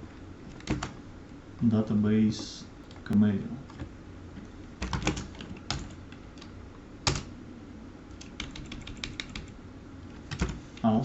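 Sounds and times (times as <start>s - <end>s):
faint steady hum: 0.0s - 11.0s
typing on a computer keyboard: 0.5s - 1.0s, 4.8s - 7.3s, 8.1s - 9.5s, 10.3s - 10.6s.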